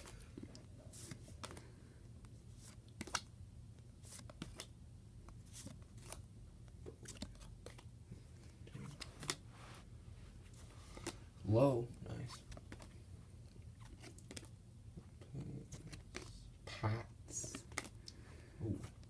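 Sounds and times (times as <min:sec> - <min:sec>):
trading cards flipped by hand: 0:00.9 - 0:01.6, 0:02.5 - 0:03.3, 0:04.0 - 0:06.2, 0:06.9 - 0:07.9, 0:08.8 - 0:09.4, 0:10.5 - 0:11.2, 0:13.8 - 0:14.5, 0:17.4 - 0:18.0.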